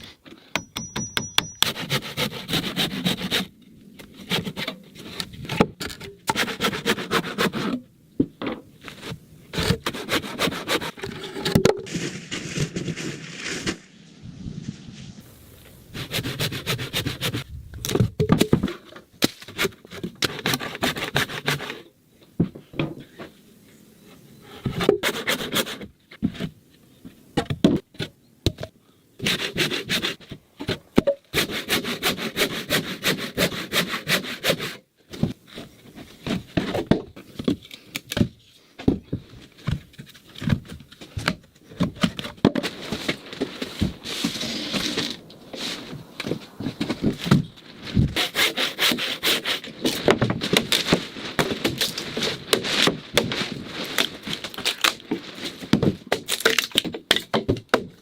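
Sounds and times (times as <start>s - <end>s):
handsaw cutting log: 1.6s - 3.5s, 4.1s - 5.2s, 6.2s - 7.8s, 9.0s - 11.5s, 15.9s - 17.4s, 19.5s - 21.8s, 24.6s - 25.9s, 29.2s - 30.2s, 31.3s - 34.8s, 48.0s - 50.9s.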